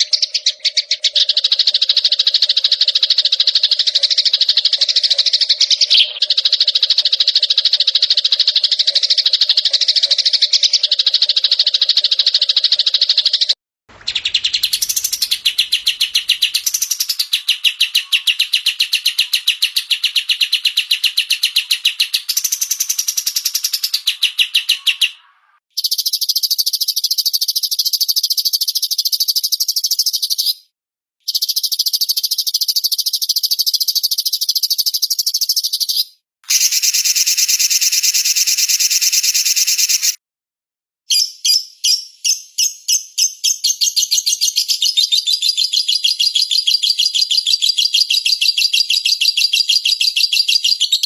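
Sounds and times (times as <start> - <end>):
songbirds trilling: 0.0 - 27.0.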